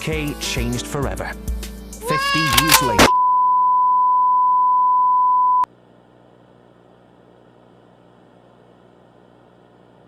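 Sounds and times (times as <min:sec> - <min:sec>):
click: 0:02.4 - 0:02.9
electronic test tone: 0:03.1 - 0:05.7.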